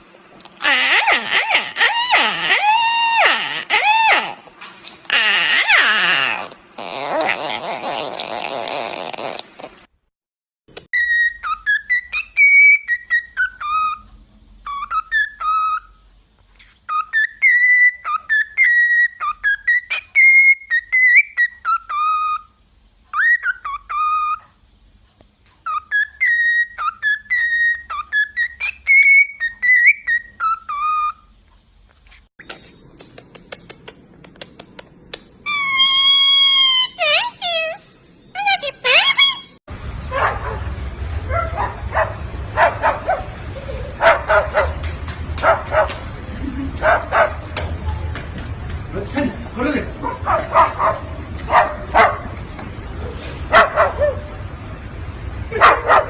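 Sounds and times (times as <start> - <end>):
bird whistling a tune: 11.0 - 14.0, 14.6 - 16.0, 16.9 - 22.5, 23.1 - 24.4, 25.6 - 31.2
harsh bird call: 35.5 - 39.6.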